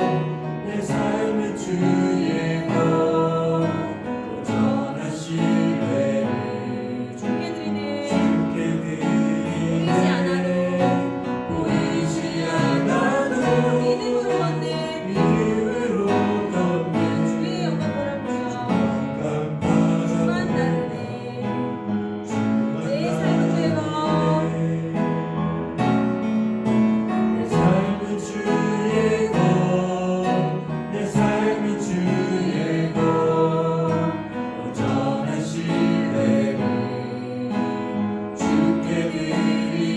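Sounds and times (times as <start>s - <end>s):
group singing worship song: 0.0s - 39.9s
keyboard accompaniment: 0.0s - 39.9s.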